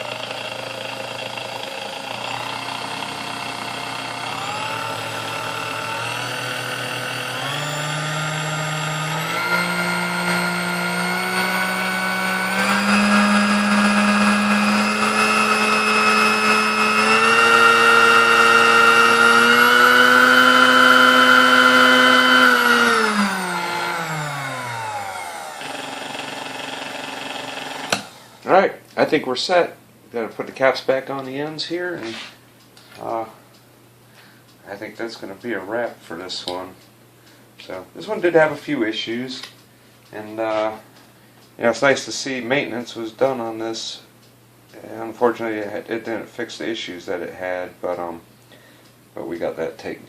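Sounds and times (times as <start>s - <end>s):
stand mixer motor whine: 0.0s - 28.4s.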